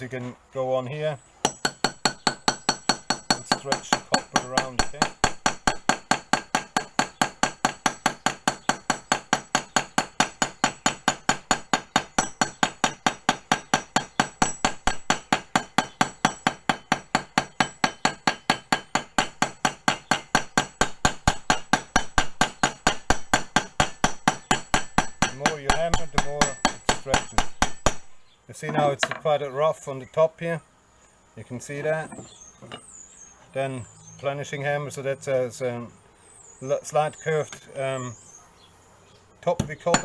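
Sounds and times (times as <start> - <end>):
hammer striking copper on anvil: 1.4 - 29.3, 39.6 - 40.0.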